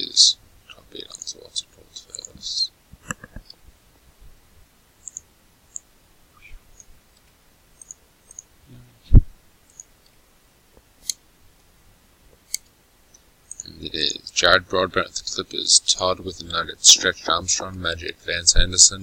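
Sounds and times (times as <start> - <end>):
computer mouse clicks: 5.0 - 5.9, 6.8 - 8.5, 9.7 - 10.2, 12.5 - 13.7.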